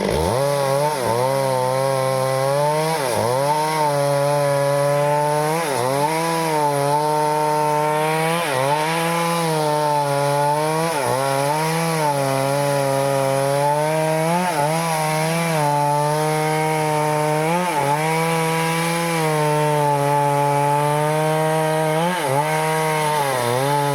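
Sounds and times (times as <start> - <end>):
chainsaw cutting wood: 0.0 - 23.9.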